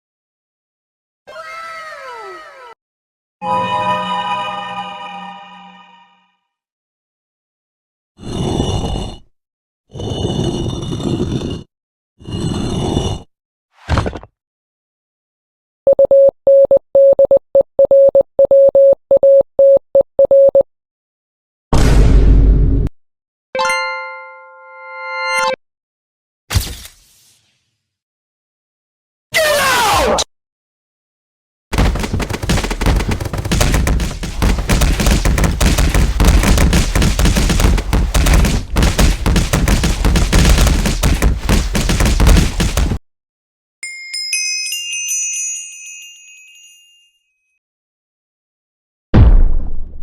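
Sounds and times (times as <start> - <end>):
morse code beeps: 15.9 - 20.7
rapid gunfire: 31.7 - 43.0.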